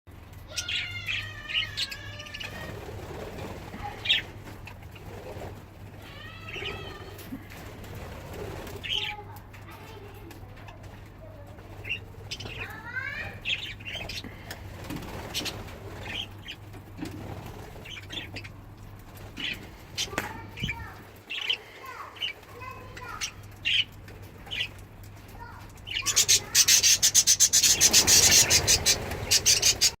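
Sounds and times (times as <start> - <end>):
birds nibbling leaves: 0.2 - 30.0
budgerigars chirping and warbling: 0.5 - 7.2, 11.7 - 18.6, 19.3 - 24.8, 25.4 - 30.0.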